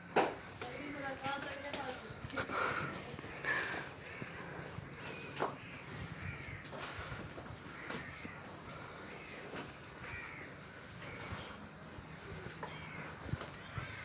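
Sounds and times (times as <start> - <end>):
crows cawing: 3.4 - 11.5, 13.7 - 14.0.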